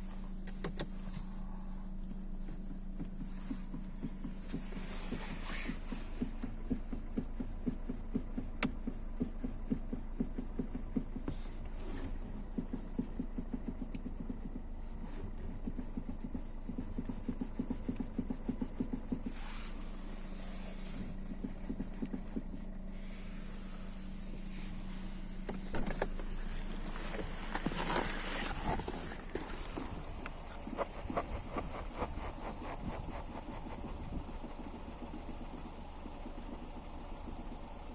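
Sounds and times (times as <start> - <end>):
steady low hum: 0.0 - 37.9
rapid low knocking: 2.1 - 11.4, 28.4 - 37.9.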